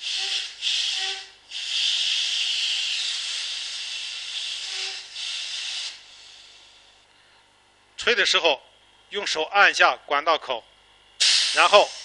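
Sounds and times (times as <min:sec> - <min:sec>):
gas hissing from pipe: 0:00.0 - 0:07.0, 0:11.2 - 0:12.0.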